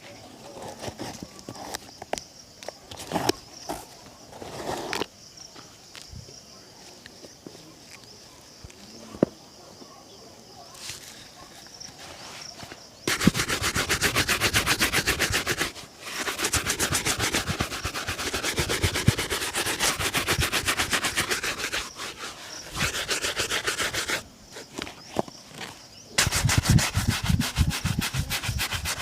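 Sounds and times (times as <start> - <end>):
shoe buffing rubbing strokes: 12.2 - 29.0.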